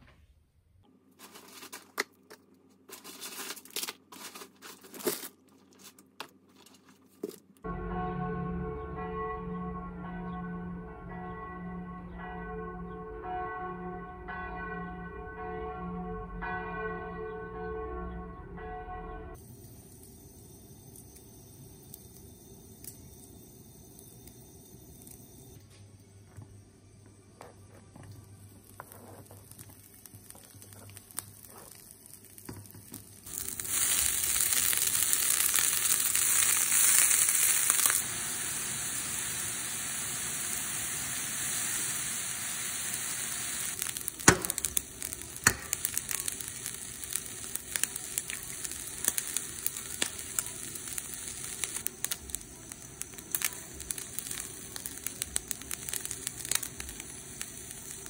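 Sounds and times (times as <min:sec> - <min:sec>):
crackles and pops of frying: 0:01.2 - 0:07.6, 0:19.4 - 0:26.4, 0:27.4 - 0:58.0
food sizzling in a hot pan: 0:28.6 - 0:58.0.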